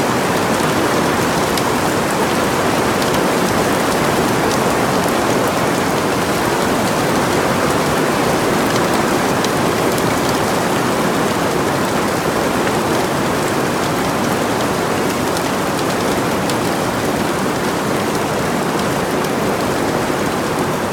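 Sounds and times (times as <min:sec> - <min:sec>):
hail and rain on greenhouse: 0:00.0 - 0:20.9.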